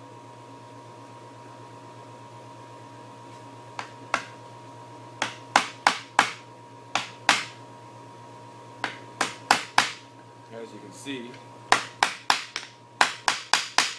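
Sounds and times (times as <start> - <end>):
faint steady hum: 0.0 - 13.9
hammer knocking on wood: 7.0 - 7.5, 8.8 - 10.0, 11.7 - 13.9.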